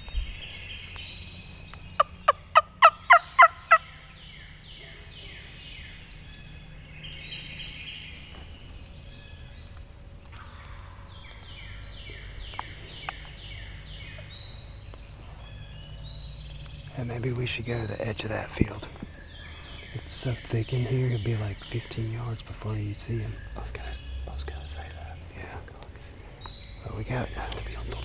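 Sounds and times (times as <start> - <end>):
songbirds chirping: 0.0 - 28.0
turkey call yelps: 2.0 - 3.8.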